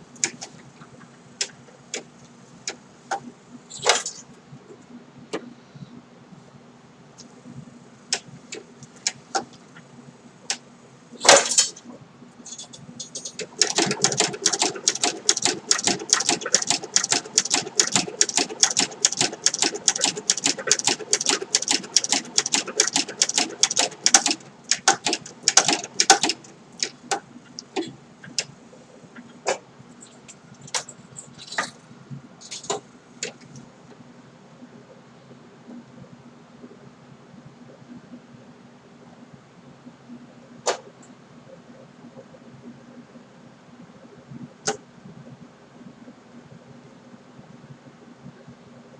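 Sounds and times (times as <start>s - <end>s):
sewing machine stitching: 13.2s - 27.0s.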